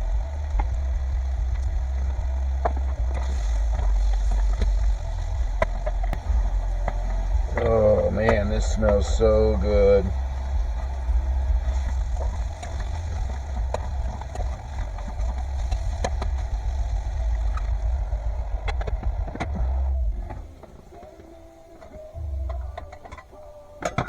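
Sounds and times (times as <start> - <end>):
stove burner rumble: 0.0 - 24.0.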